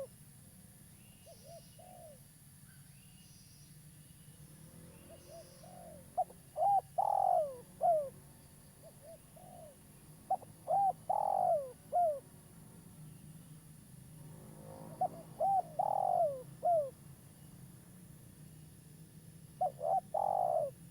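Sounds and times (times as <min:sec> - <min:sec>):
dove cooing: 0:01.4 - 0:02.2, 0:05.0 - 0:12.4, 0:14.8 - 0:17.0, 0:19.6 - 0:20.9.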